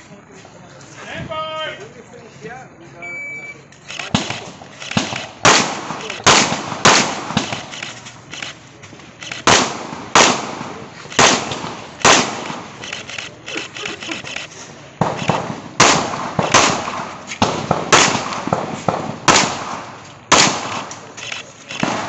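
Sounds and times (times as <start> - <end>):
handgun shots echoing: 4.0 - 8.0, 9.3 - 12.8, 15.0 - 21.2, 21.8 - 22.0.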